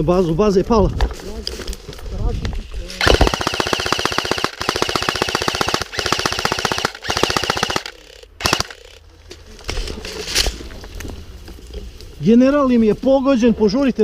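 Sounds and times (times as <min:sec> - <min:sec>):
airsoft guns firing full auto: 0:03.0 - 0:09.0.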